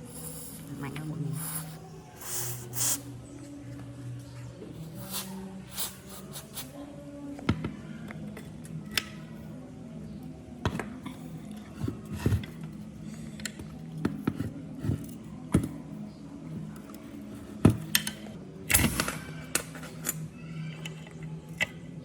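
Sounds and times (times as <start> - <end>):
metallic clicks and knocks of tools: 17.9 - 18.9.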